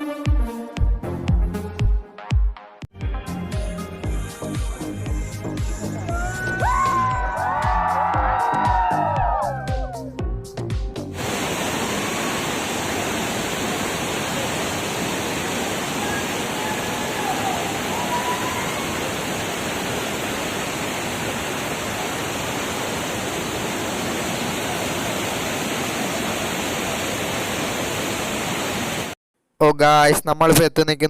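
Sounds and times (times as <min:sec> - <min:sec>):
waterfall rushing: 0:11.2 - 0:29.2.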